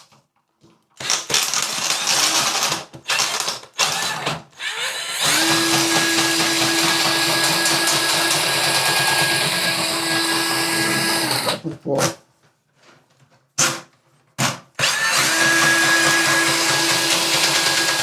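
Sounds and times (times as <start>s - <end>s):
drain auger motor whining: 4.0s - 11.6s, 14.8s - 18.0s.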